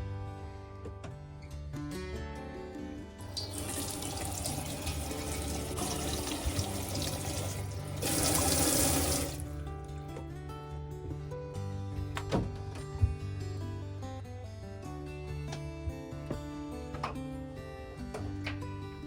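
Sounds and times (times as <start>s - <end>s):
background music: 0.0s - 19.0s
water running: 3.3s - 9.7s.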